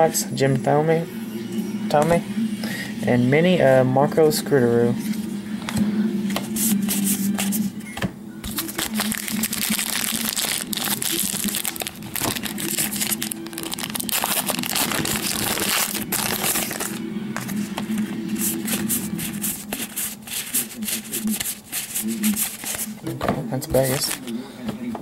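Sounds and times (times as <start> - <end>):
plastic wrapper crinkling: 8.4 - 17.6.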